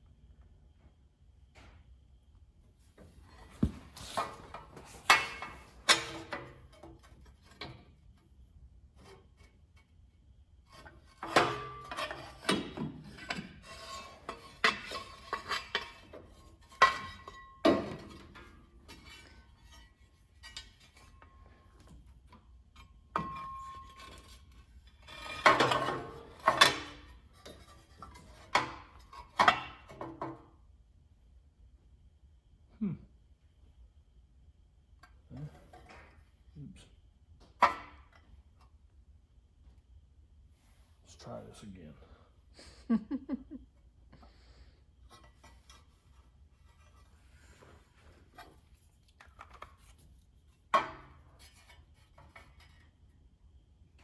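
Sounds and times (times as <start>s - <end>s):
metal parts clanking and scraping: 3.2s - 7.5s, 23.2s - 29.6s.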